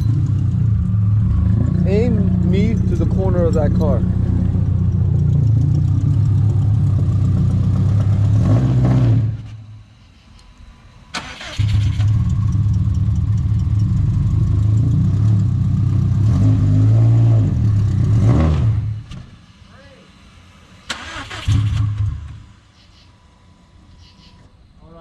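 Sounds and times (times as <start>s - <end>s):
car engine running: 0.0s - 24.0s
engine starter cranking: 11.1s - 13.0s, 20.9s - 22.4s.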